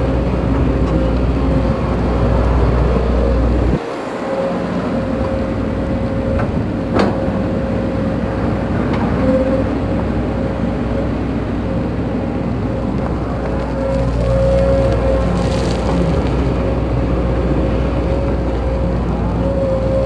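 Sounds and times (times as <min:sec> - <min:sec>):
diesel engine rumbling: 0:00.0 - 0:20.0.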